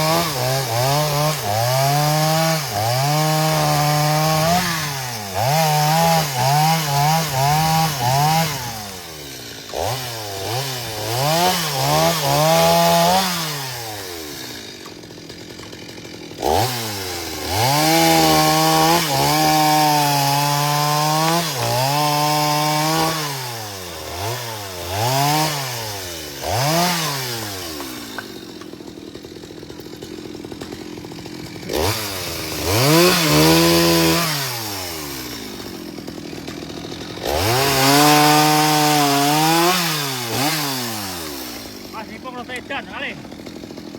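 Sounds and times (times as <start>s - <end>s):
chainsaw engine revving: 0.0s - 43.9s.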